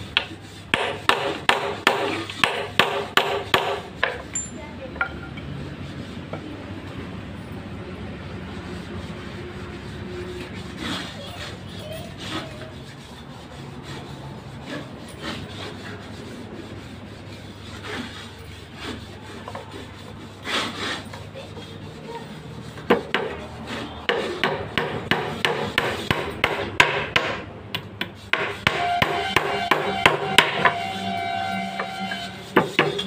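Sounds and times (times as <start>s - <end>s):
scraping and rubbing on wood: 0.0s - 7.0s, 8.5s - 33.0s
hammer blows on wood: 0.1s - 4.3s, 24.0s - 33.0s.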